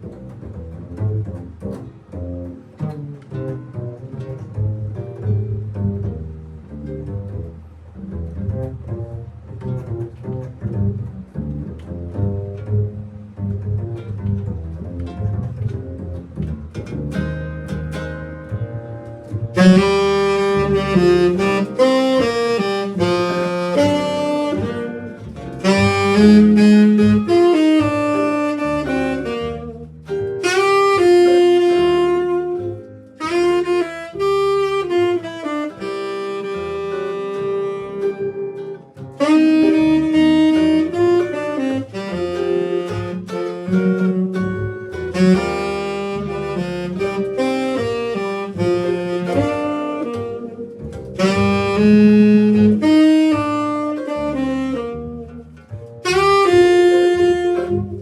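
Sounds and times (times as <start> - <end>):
bass line: 0.0 - 58.0
jazz band playing: 0.0 - 58.0
saxophone melody: 18.5 - 58.0.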